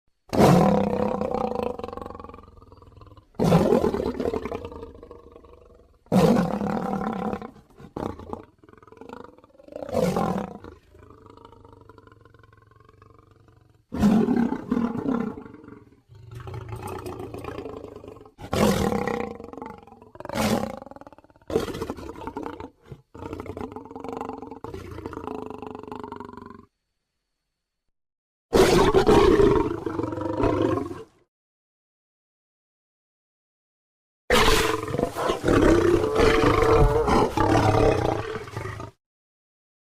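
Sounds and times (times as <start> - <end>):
deep monster roars: 34.3 - 39.0.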